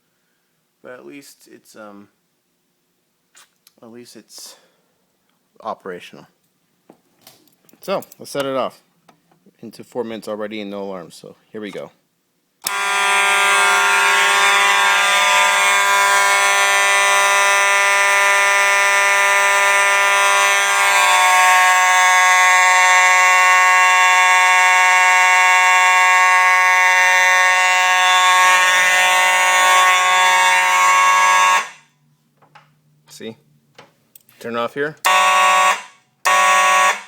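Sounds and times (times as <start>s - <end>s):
fire alarm horn buzzing: 12.6s - 32.0s, 35.0s - 37.0s.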